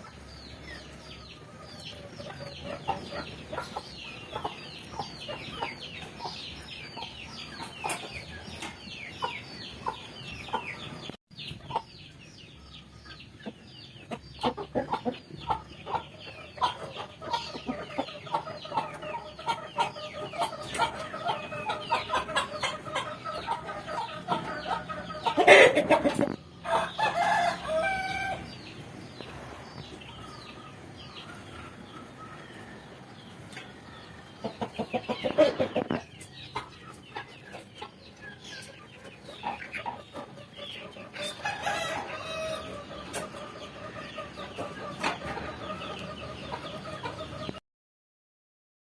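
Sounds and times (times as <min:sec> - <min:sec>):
chickens clucking: 0:00.0 - 0:47.6
rooster crowing: 0:26.7 - 0:28.4, 0:41.4 - 0:42.6.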